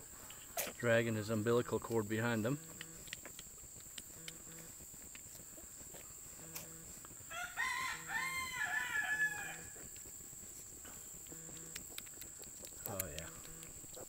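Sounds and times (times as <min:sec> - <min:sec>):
rooster crowing: 0:07.3 - 0:09.8.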